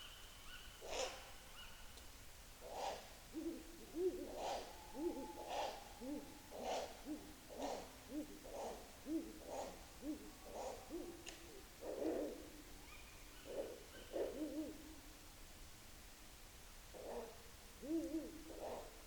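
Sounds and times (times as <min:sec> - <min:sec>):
owl low hoots: 0:00.4 - 0:01.8, 0:02.6 - 0:15.0, 0:16.9 - 0:19.0
owl harsh calls: 0:02.6 - 0:11.2.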